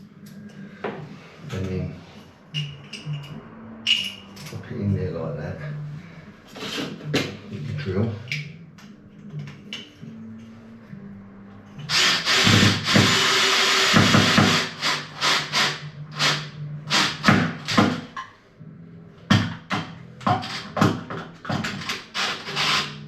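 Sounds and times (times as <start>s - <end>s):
drill driving a screw: 11.9s - 18.0s, 21.8s - 23.0s.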